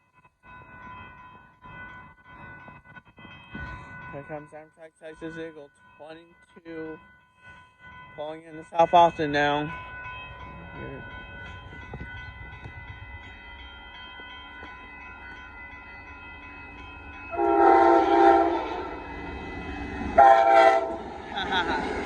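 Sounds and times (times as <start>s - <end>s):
train rumbling: 0.0s - 22.0s
locomotive horn blasts: 17.3s - 19.0s, 20.2s - 21.1s.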